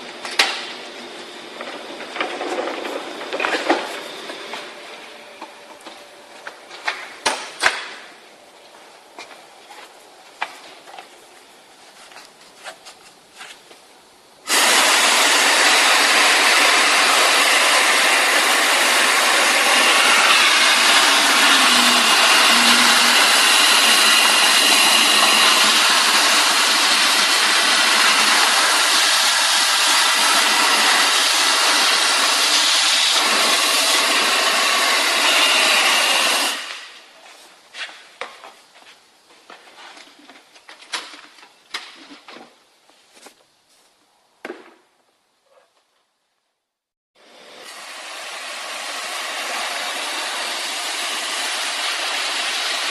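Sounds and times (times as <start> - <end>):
vacuum cleaner hissing: 14.4 - 38.0, 47.2 - 52.9.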